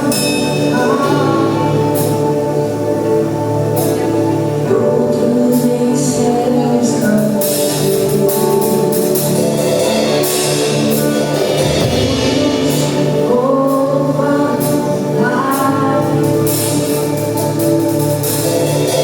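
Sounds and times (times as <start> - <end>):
band playing gospel music: 0.0 - 19.0
drum kit: 0.0 - 19.0
group of voices singing: 11.8 - 17.6.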